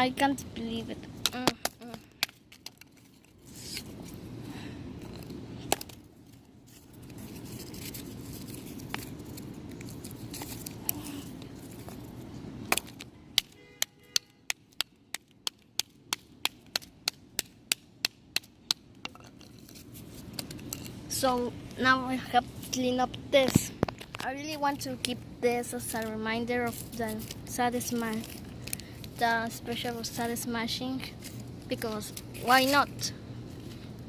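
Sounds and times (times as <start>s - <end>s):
cardboard rustling: 6.7s - 10.8s.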